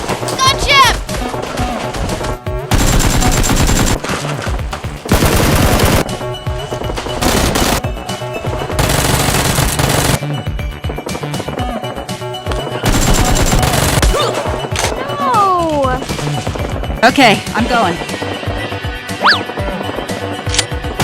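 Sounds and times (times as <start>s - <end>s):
background music: 0.0s - 21.0s
automatic gunfire bursts: 2.7s - 4.0s, 5.1s - 6.0s, 7.2s - 7.8s, 8.8s - 10.2s, 12.8s - 14.1s.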